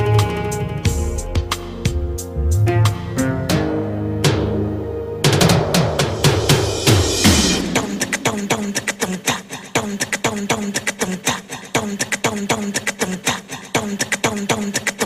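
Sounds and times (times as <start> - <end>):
drum tone dropping in pitch: 0.9 - 9.5
sharp clicking percussion beat: 5.2 - 15.0.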